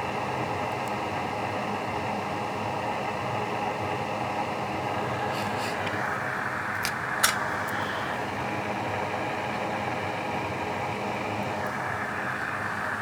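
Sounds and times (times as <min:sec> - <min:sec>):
blower air hiss: 0:04.6 - 0:09.3.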